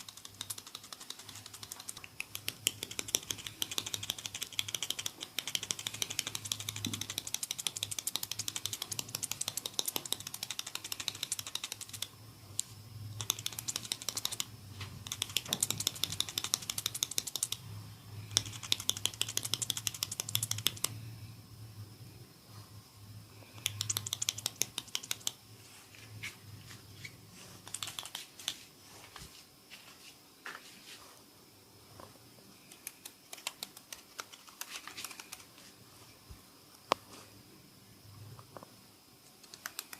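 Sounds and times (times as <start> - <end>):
hands crackling on oiled hair: 0.0 - 12.1, 32.7 - 35.7.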